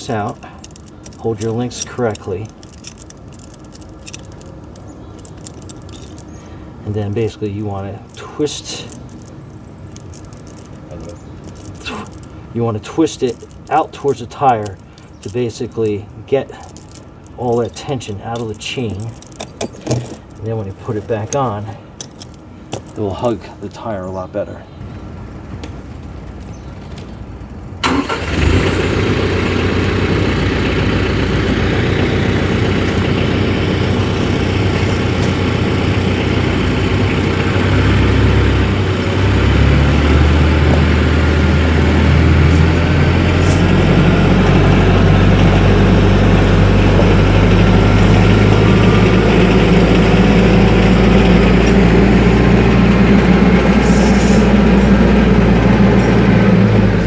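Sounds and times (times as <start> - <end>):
tractor engine running: 0.0 - 23.3, 25.4 - 57.0
tractor diesel engine starting: 27.8 - 57.0.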